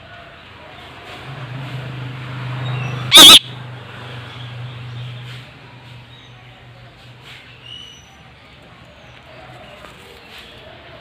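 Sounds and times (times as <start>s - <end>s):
parakeet screeching: 3.1s - 3.4s.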